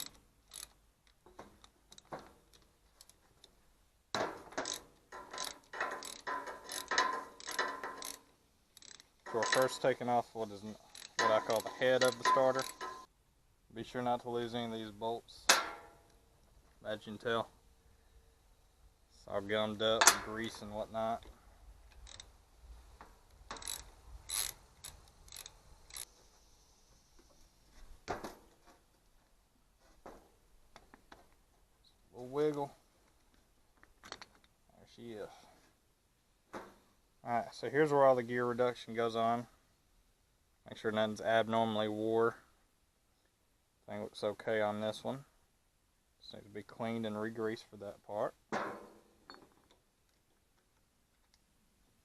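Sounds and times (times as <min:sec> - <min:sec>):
ratchet wrench clicking: 0:00.0 - 0:00.8, 0:04.6 - 0:09.1, 0:10.9 - 0:13.1, 0:22.0 - 0:22.3, 0:23.5 - 0:26.1
metal tools clinking and scraping: 0:04.4 - 0:13.1.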